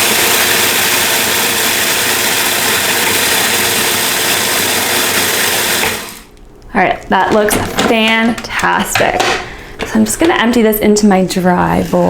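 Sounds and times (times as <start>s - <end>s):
food processor chopping oats: 0.0s - 6.3s.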